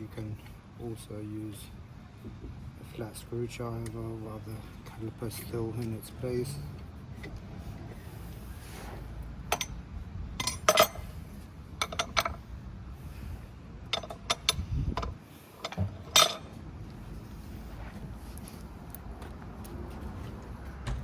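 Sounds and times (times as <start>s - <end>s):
metal parts and tools clinking: 9.4s - 9.8s, 10.4s - 11.2s, 11.8s - 12.4s, 13.9s - 16.6s.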